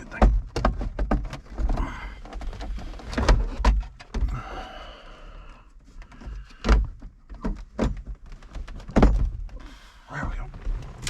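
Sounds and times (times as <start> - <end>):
creaking plastic scrape: 0.0 - 4.3, 10.3 - 11.0
plastic clicks and knocks: 0.0 - 4.3.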